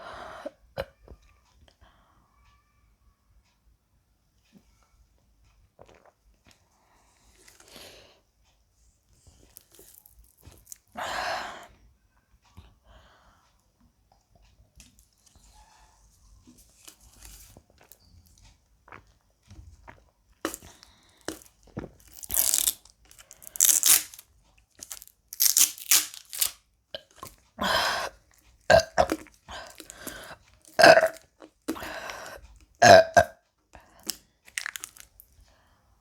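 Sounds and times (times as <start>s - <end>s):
woman burping: 28.7s - 29.8s, 30.8s - 31.9s, 32.8s - 33.4s.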